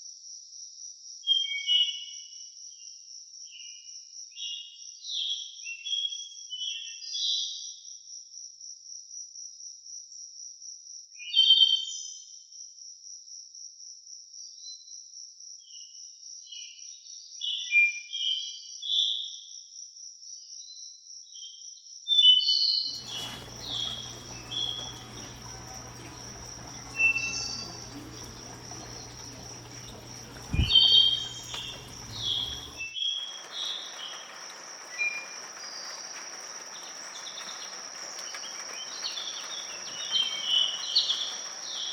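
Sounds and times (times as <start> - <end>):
songbirds singing: 22.9 - 41.9
insect trilling: 23.0 - 32.9
low steady hum: 23.0 - 32.9.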